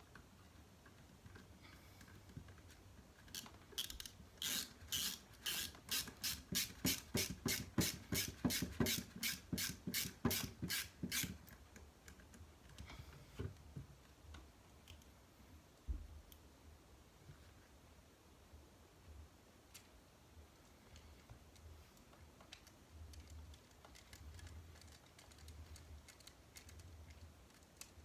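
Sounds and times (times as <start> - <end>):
hex driver turning screws: 3.8 - 11.4.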